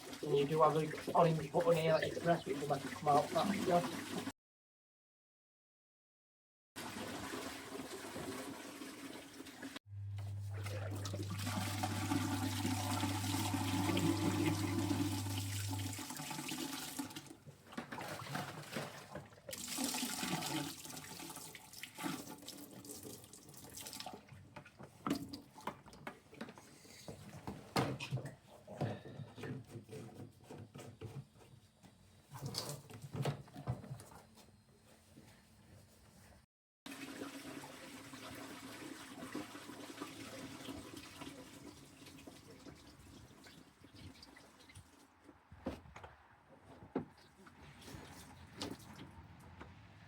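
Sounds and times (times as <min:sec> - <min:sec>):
liquid glugging: 0:10.5 - 0:15.8
liquid pouring and splashing: 0:10.5 - 0:25.9.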